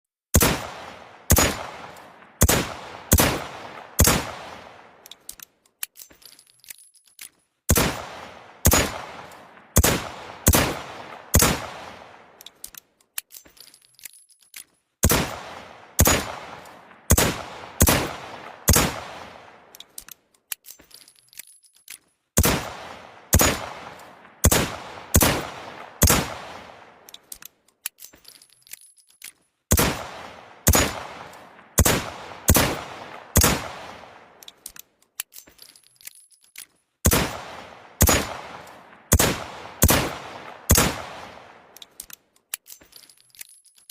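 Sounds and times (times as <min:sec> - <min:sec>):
faint clicks and clinks: 0:05.0 - 0:07.6, 0:12.3 - 0:15.0, 0:19.6 - 0:22.4, 0:27.0 - 0:29.7, 0:34.3 - 0:37.0, 0:41.7 - 0:43.9.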